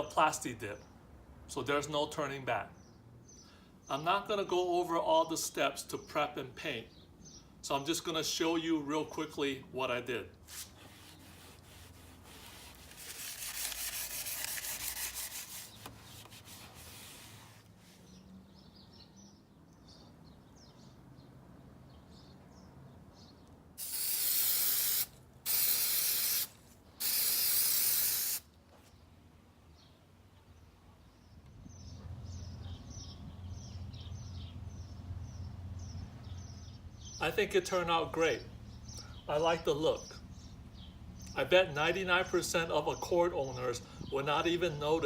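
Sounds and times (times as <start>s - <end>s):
spray paint can hissing: 11.6s - 15.7s, 23.8s - 28.5s.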